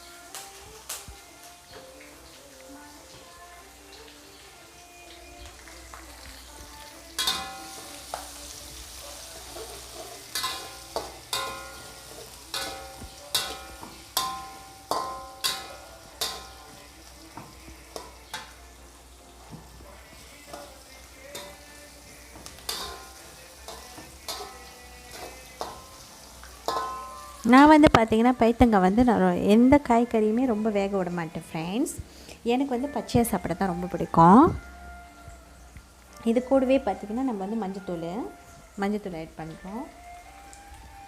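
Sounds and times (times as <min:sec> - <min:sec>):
food sizzling in hot oil: 0:00.0 - 0:41.0
spatula knocking metal pan: 0:07.2 - 0:08.3, 0:10.3 - 0:16.8, 0:22.4 - 0:26.0, 0:26.6 - 0:27.5.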